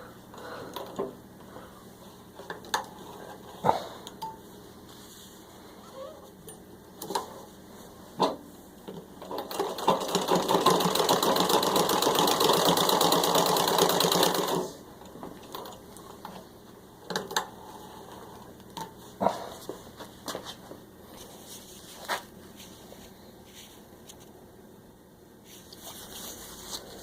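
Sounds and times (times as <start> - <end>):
treadle sewing machine stitching: 9.2 - 14.8.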